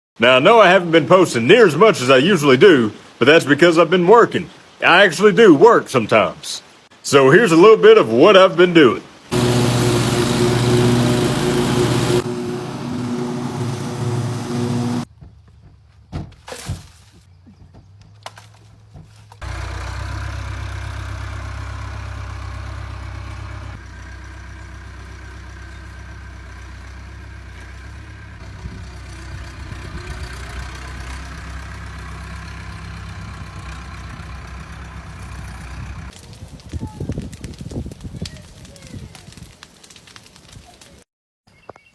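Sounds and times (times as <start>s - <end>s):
engine rumbling: 9.3s - 15.2s, 19.4s - 36.3s.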